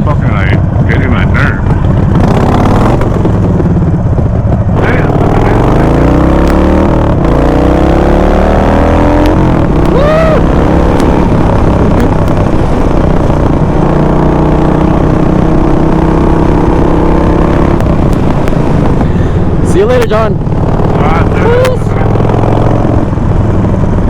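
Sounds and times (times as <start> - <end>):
motorcycle engine accelerating: 0.0 - 24.0
rising and falling tone: 5.6 - 18.9
wind on microphone: 8.7 - 24.0.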